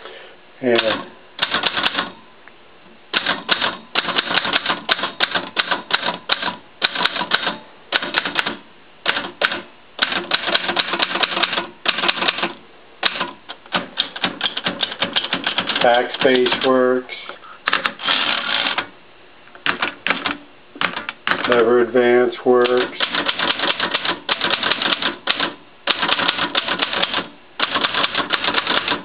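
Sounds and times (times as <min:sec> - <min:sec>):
manual typewriter clacking: 0:00.7 - 0:02.2, 0:03.1 - 0:16.9, 0:17.7 - 0:18.9, 0:19.6 - 0:21.7, 0:22.6 - 0:29.0.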